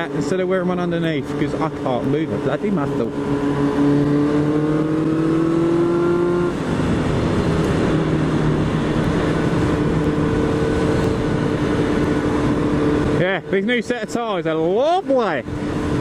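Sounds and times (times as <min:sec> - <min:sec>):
motorcycle engine revving: 0:00.0 - 0:16.0.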